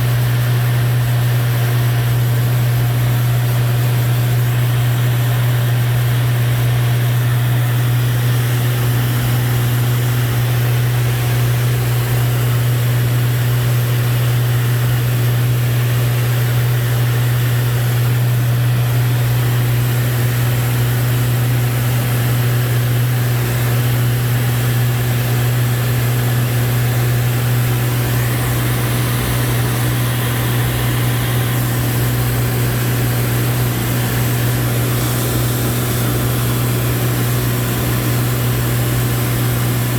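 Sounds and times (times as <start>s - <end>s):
aircraft engine and propeller drone: 0.0s - 39.9s
rushing airflow: 26.7s - 39.9s.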